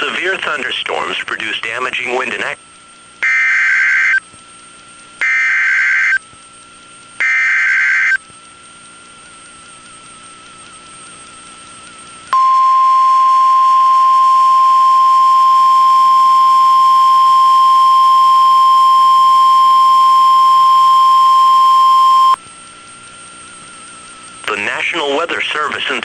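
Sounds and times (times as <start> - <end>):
faint steady whine: 0.0 - 26.0
loud steady alarm tone: 12.4 - 22.4.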